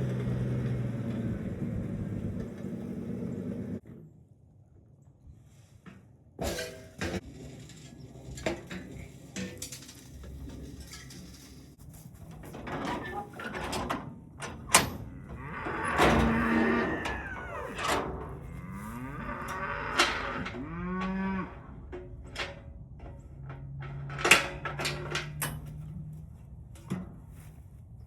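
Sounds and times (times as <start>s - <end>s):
cattle mooing: 15.0s - 21.8s.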